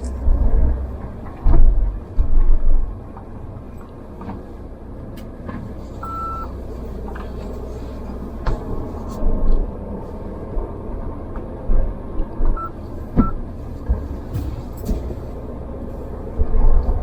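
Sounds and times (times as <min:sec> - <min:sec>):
engine rumbling at low speed: 0:00.0 - 0:17.0
short high beep: 0:06.0 - 0:06.5, 0:12.6 - 0:13.4.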